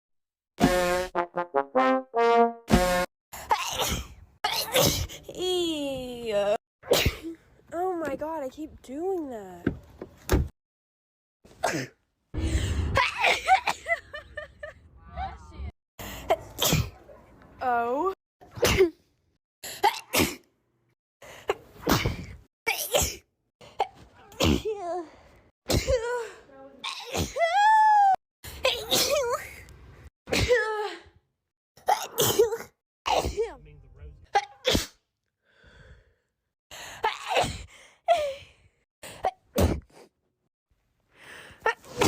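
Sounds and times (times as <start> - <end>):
woman sneezing: 3.6 - 5.2
catch of breath: 35.4 - 37.0.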